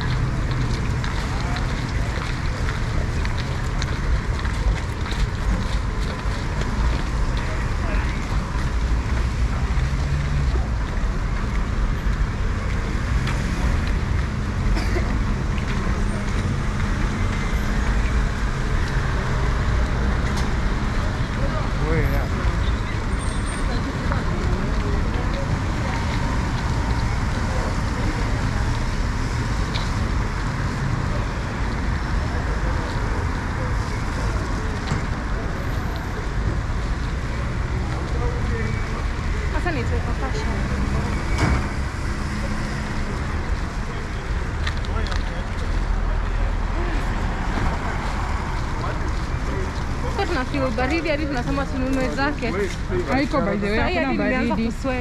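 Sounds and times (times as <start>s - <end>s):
road traffic: 0.0s - 55.0s.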